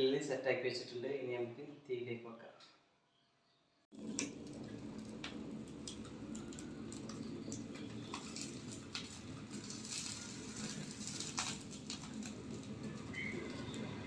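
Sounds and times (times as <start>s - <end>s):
low rushing of fire: 3.9s - 14.0s
wood fire crackling and popping: 3.9s - 14.0s.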